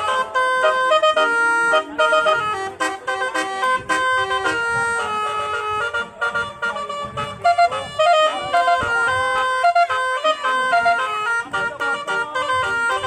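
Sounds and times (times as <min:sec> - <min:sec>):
multi-tone horn melody: 0:00.0 - 0:13.0.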